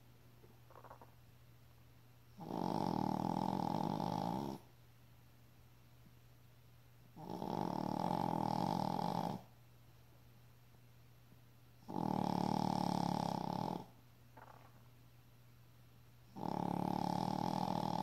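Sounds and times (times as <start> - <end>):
pet snoring: 2.4 - 4.7, 7.2 - 9.5, 11.8 - 14.6, 16.3 - 18.0.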